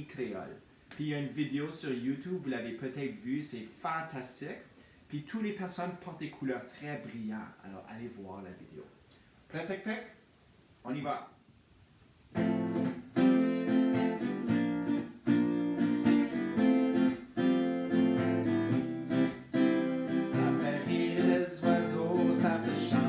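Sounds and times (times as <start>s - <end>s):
acoustic guitar strumming: 12.4s - 23.0s.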